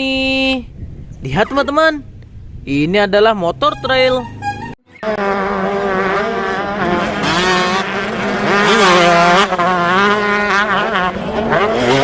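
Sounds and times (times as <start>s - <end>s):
dirt bike engine revving: 4.2s - 12.0s.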